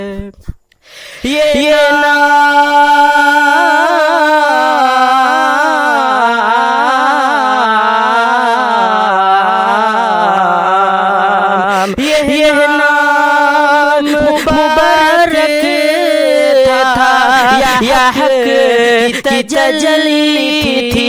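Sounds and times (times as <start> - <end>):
solo voice singing unaccompanied: 0.0 - 21.0.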